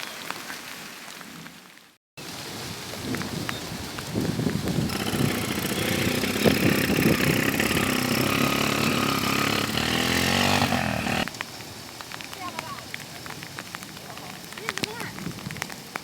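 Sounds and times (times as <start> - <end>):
heavy rain hissing: 3.8 - 14.7
small petrol engine running: 4.9 - 11.3.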